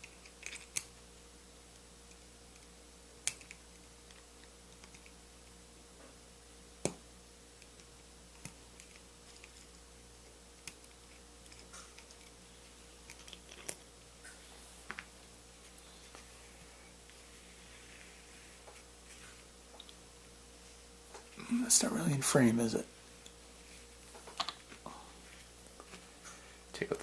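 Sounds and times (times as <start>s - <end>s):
metal lock parts clicking: 0.0s - 0.9s, 13.0s - 13.9s.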